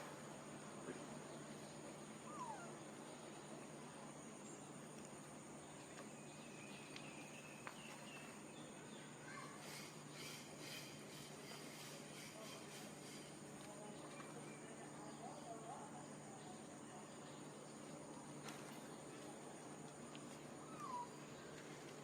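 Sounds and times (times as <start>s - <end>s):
steady hiss: 9.2s - 13.8s.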